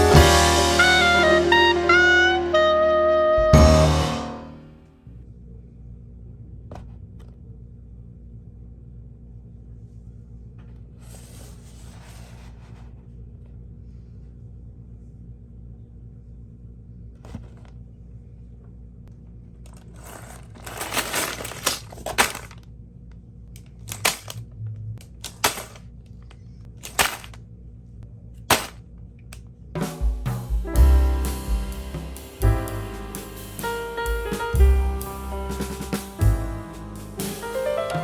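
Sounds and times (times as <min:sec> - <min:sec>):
music with drums and piano: 0:00.0 - 0:04.6, 0:29.8 - 0:38.0
plastic bricks rattling and rustling: 0:19.7 - 0:22.6, 0:25.3 - 0:25.9, 0:26.8 - 0:27.4.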